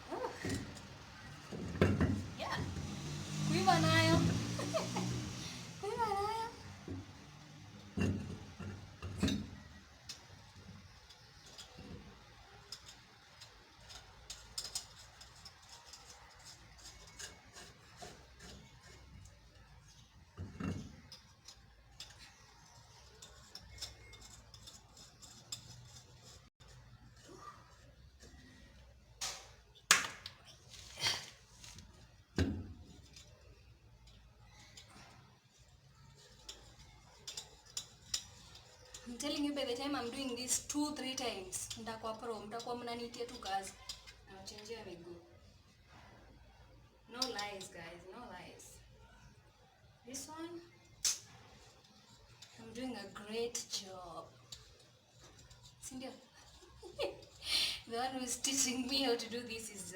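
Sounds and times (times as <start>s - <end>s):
tyre tools knocking and clanking: 0.2s - 2.4s, 6.9s - 9.6s.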